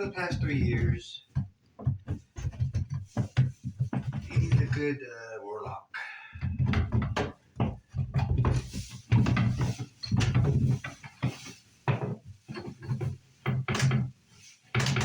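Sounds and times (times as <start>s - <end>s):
wooden knocks and creaks: 0.0s - 15.0s.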